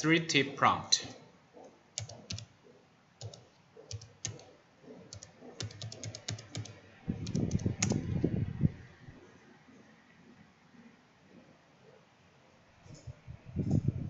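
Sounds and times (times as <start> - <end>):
typing on computer keyboard: 2.0 - 2.5, 3.2 - 4.5, 5.1 - 8.1.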